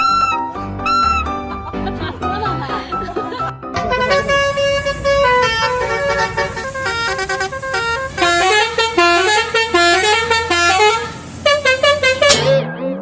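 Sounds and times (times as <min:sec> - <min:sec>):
bus horn playing a tune: 0:03.8 - 0:12.7.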